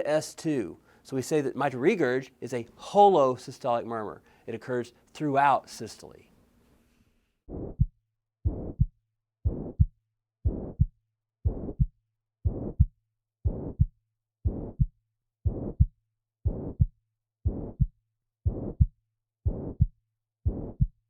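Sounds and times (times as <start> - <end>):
heart sounds with murmur: 7.5 - 7.9, 8.5 - 21.0.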